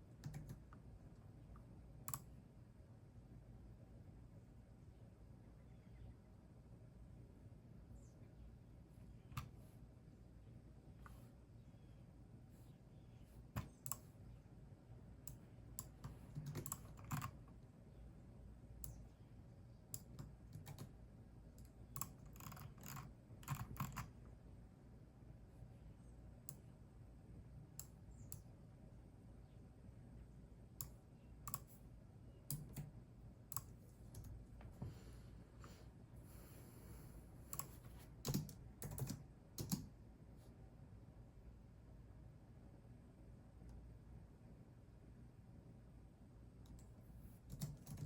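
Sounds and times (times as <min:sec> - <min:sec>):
computer keyboard typing: 0:00.1 - 0:00.8, 0:15.3 - 0:17.6, 0:20.0 - 0:21.0, 0:21.6 - 0:24.2, 0:37.5 - 0:39.9, 0:46.7 - 0:48.0.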